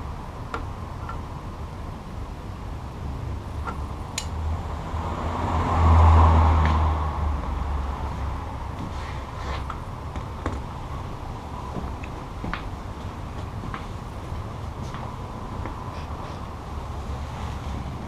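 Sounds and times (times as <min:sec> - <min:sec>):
road vehicle rumbling past: 0:01.3 - 0:18.0.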